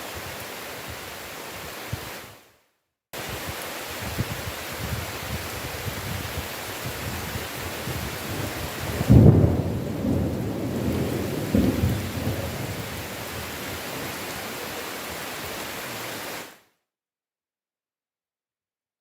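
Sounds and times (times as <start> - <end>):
heavy rain: 0.0 - 2.4, 3.2 - 16.6
thunder clap and rumble: 7.8 - 13.9.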